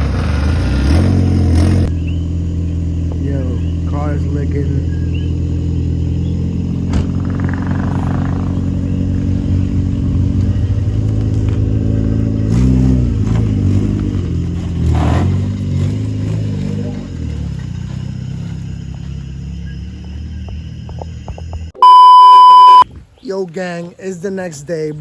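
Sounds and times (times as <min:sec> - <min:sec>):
car engine running: 0:00.0 - 0:22.8
throttle blips: 0:21.8 - 0:22.8.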